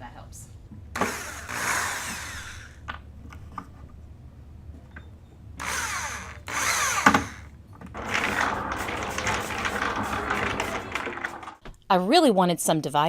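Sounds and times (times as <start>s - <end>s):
power drill running: 1.0s - 2.9s, 5.6s - 11.6s.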